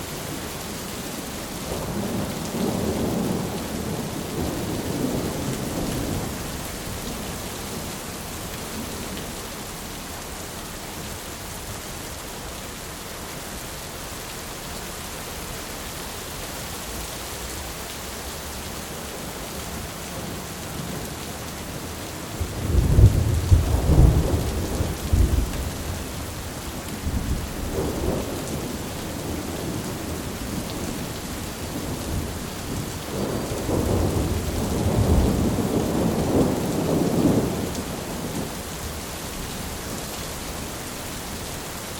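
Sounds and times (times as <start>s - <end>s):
heavy rain falling: 0.0s - 41.9s
thunder rumbling: 22.4s - 38.6s.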